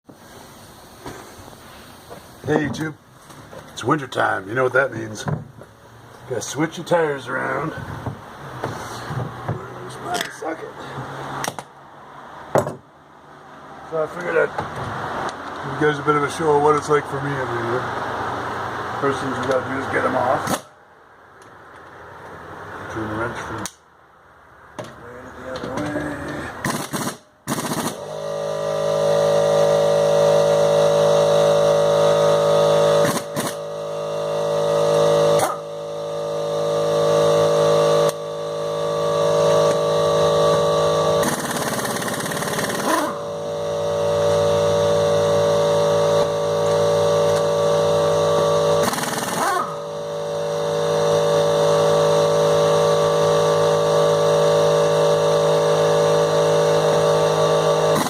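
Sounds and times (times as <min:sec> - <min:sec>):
air hissing bursts: 0:00.1 - 0:02.5, 0:08.6 - 0:09.3
air compressor motor humming: 0:25.7 - 0:58.0.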